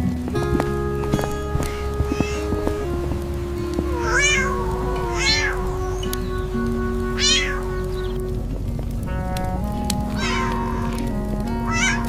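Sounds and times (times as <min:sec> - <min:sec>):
background music with held notes: 0:00.0 - 0:12.0
cat meowing: 0:02.0 - 0:02.6, 0:03.9 - 0:06.2, 0:07.2 - 0:07.6, 0:10.2 - 0:10.9, 0:11.7 - 0:12.0.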